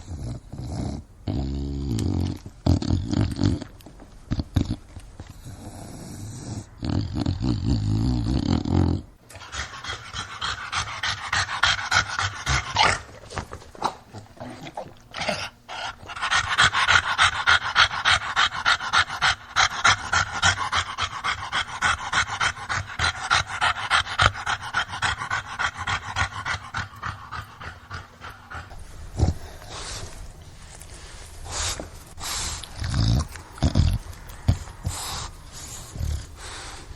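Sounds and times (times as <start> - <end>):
dog panting: 9.3 - 14.6, 15.2 - 36.9.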